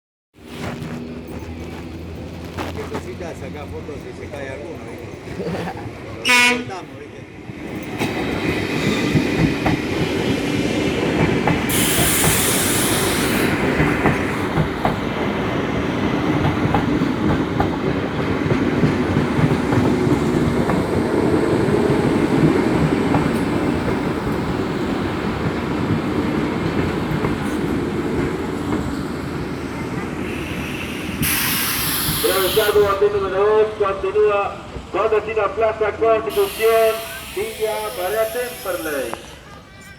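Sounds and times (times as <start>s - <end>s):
train rumble: 0.4s - 39.9s
train wheels clattering over rail joints: 7.5s - 30.2s
loud hiss: 11.7s - 13.6s, 30.2s - 33.1s, 36.3s - 39.6s.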